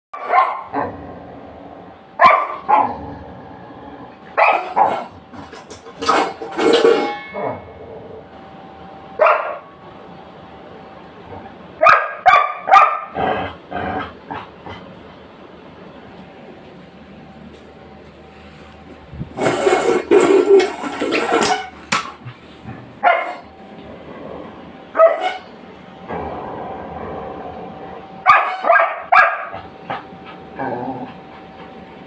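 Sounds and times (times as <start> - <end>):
dog barking: 0.2 - 0.8, 2.2 - 2.9, 4.4 - 5.1, 9.2 - 9.7, 11.8 - 13.1, 23.0 - 23.4, 25.0 - 25.4, 28.2 - 29.6.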